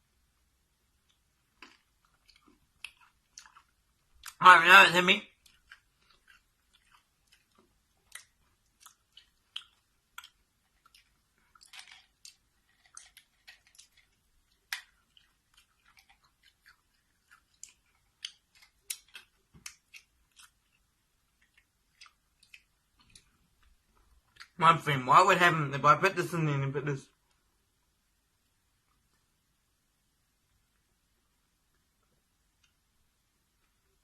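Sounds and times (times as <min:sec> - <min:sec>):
person chewing food: 0:00.3 - 0:04.4, 0:05.2 - 0:24.6.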